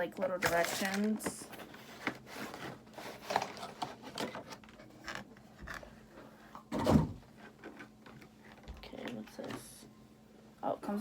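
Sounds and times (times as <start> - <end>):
cardboard packaging rustling: 0.3 - 5.8.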